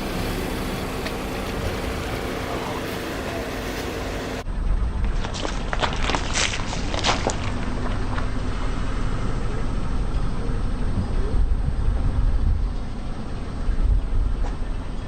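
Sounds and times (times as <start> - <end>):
sharp crackles: 5.0 - 8.9.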